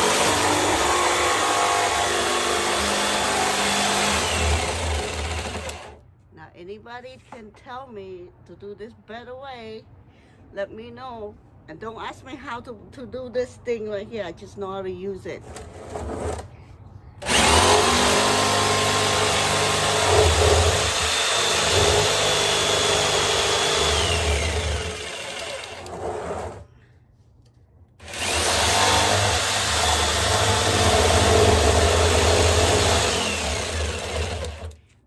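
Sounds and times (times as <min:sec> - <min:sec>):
electric jigsaw cutting metal barrel: 0:00.0 - 0:06.0, 0:17.2 - 0:26.6, 0:28.0 - 0:34.8.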